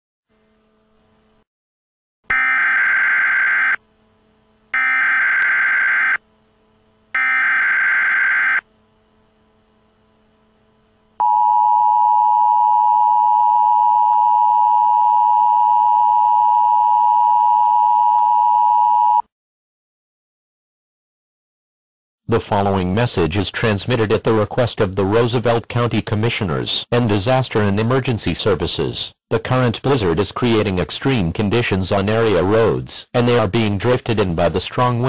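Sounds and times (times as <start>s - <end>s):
screeching data tones: 2.3s - 3.8s, 4.8s - 6.2s, 7.2s - 8.6s.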